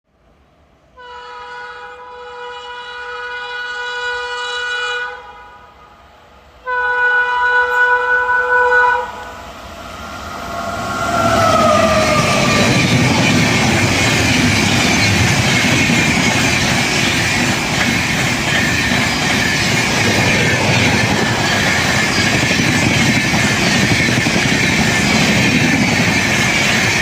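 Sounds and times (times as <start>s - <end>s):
locomotive horn blasts: 1.0s - 5.9s, 6.6s - 9.5s
train rumble and wheel clatter: 7.4s - 27.0s
falling whine: 9.6s - 25.1s.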